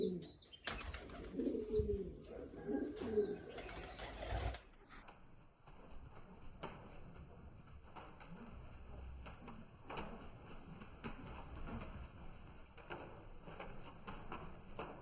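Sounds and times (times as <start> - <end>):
pigeons cooing: 0.0 - 4.6.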